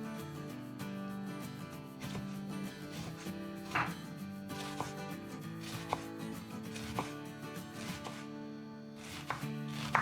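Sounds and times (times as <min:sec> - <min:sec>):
soft background music: 0:00.0 - 0:10.0
knife chopping on cutting board: 0:02.0 - 0:08.3, 0:09.0 - 0:10.0.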